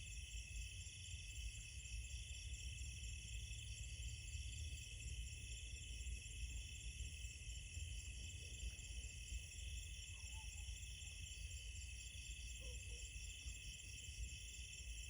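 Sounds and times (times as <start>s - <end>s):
crickets trilling: 0.0s - 15.0s.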